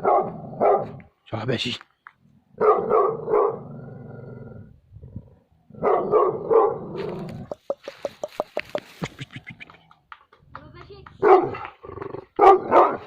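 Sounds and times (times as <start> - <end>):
dog barking: 0.0 - 1.0, 2.6 - 3.7, 5.8 - 6.9, 11.2 - 13.0
dog growling: 2.3 - 7.6, 11.5 - 12.4.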